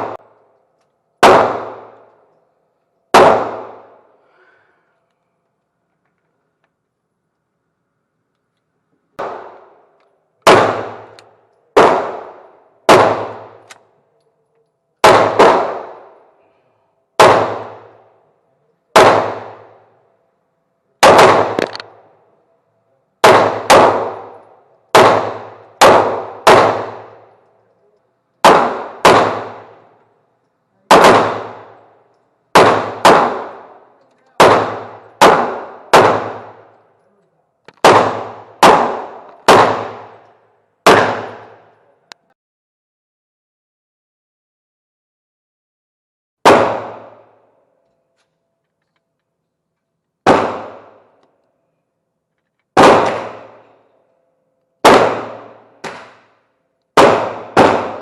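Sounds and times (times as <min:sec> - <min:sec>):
gunshots: 0:00.0 - 0:00.3, 0:01.2 - 0:02.2, 0:03.1 - 0:04.1, 0:09.2 - 0:13.8, 0:15.0 - 0:16.4, 0:17.2 - 0:18.1, 0:18.9 - 0:19.9, 0:21.0 - 0:22.2, 0:23.2 - 0:27.4, 0:28.4 - 0:30.0, 0:30.9 - 0:36.8, 0:37.7 - 0:41.8, 0:46.4 - 0:47.4, 0:50.2 - 0:51.2, 0:52.7 - 0:53.9, 0:54.8 - 0:58.0.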